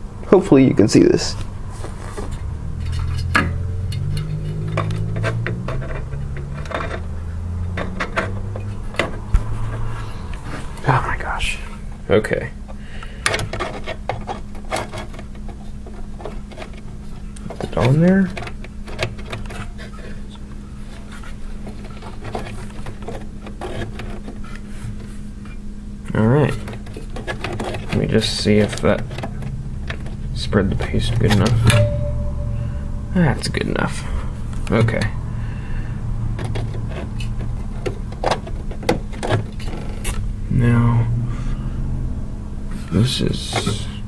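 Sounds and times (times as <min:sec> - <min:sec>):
low steady hum: 0:00.0 - 0:44.0
heatsink clicks and scraping: 0:02.2 - 0:10.6, 0:12.7 - 0:25.2, 0:26.5 - 0:32.0.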